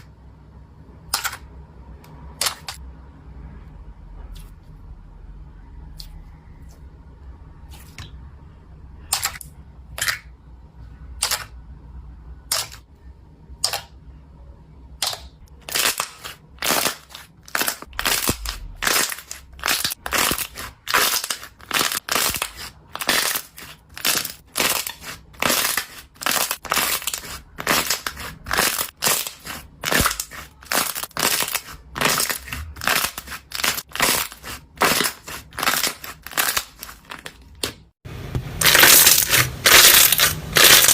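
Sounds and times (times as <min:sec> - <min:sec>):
foam slime crunchy squishes: 0:15.0 - 0:37.8, 0:38.5 - 0:40.9.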